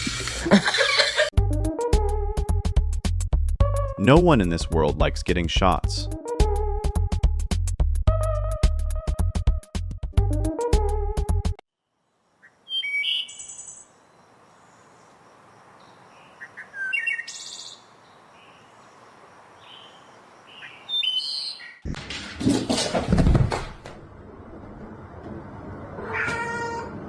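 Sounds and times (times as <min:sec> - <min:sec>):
birds chirping: 0:12.3 - 0:21.8.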